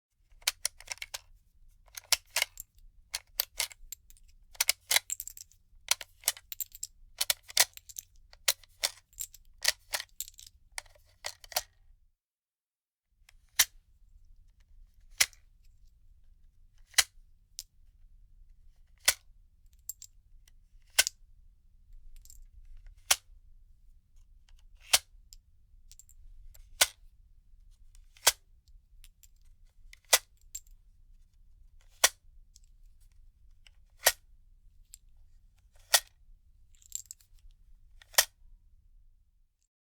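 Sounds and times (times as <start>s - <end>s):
gun magazine clicks and rattles: 0.4s - 1.2s, 1.9s - 2.6s, 3.2s - 3.8s, 4.6s - 11.7s.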